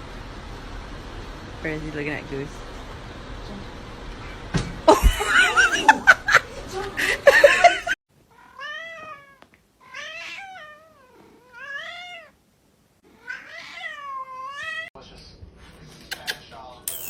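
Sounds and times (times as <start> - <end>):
cat meowing: 8.3 - 12.4, 13.1 - 14.9.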